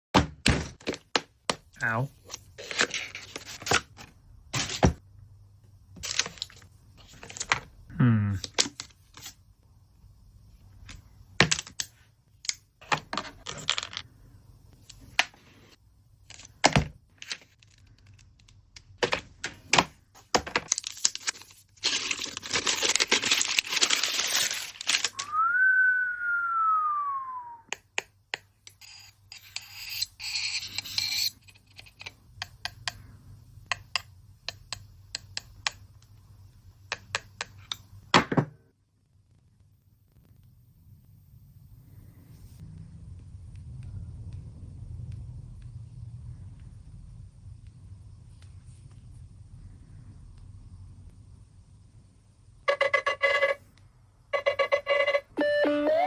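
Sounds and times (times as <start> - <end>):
packaging tearing and rustling: 20.5 - 25.3
rising and sliding tone: 25.2 - 27.6.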